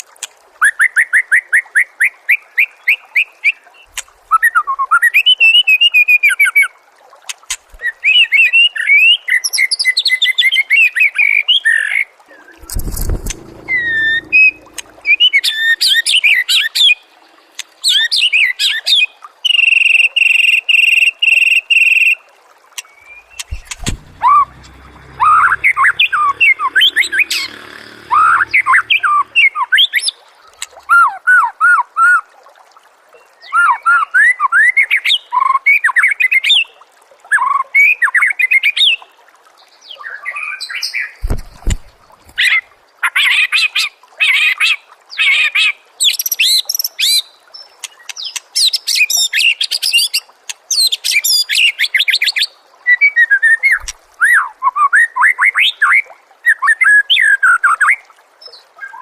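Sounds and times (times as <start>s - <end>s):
low thump: 12.6s - 15.3s, 23.3s - 28.9s, 41.2s - 42.0s.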